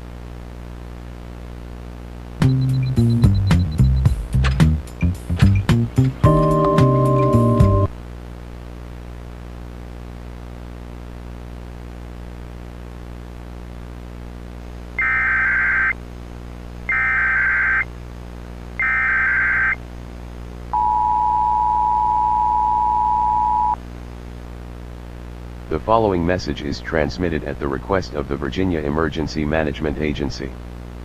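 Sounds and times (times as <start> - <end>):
steady low hum: 0.0 - 31.0
digital header tone bursts: 2.4 - 4.1, 15.0 - 16.0, 16.9 - 17.9, 18.8 - 19.8
two-tone alert signal: 6.2 - 7.9, 15.0 - 15.9, 16.9 - 17.8, 18.8 - 19.8, 20.8 - 23.8.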